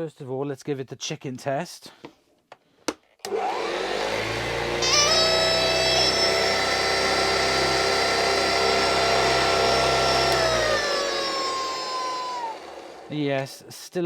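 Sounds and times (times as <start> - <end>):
vacuum cleaner motor whining: 3.3 - 13.2.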